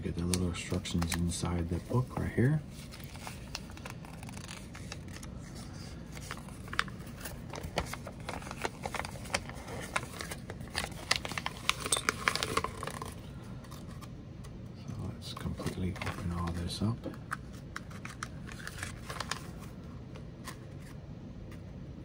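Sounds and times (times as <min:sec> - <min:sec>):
plastic bag crinkling: 0:06.0 - 0:13.9.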